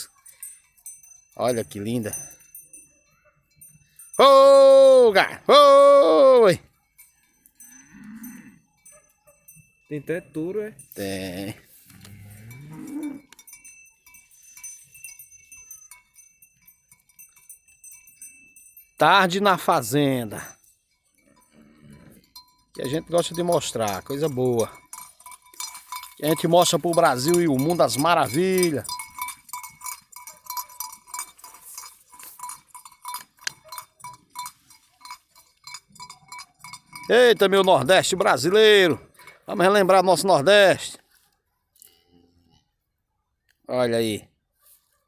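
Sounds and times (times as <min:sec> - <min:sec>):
small bells jingling: 0:00.0 - 0:41.1
cow mooing: 0:11.9 - 0:13.4.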